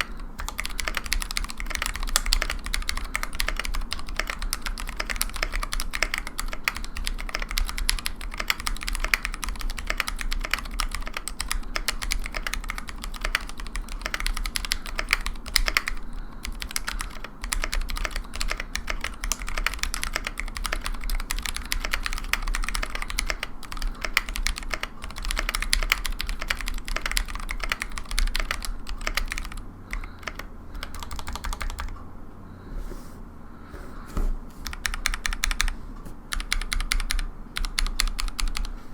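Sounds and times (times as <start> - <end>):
mechanical keyboard typing: 0.0 - 32.0, 34.6 - 38.7.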